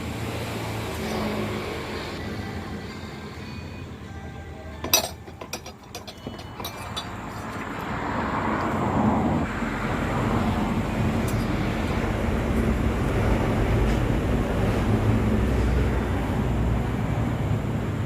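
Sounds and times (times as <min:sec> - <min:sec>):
light metal clinks: 0:04.8 - 0:07.6.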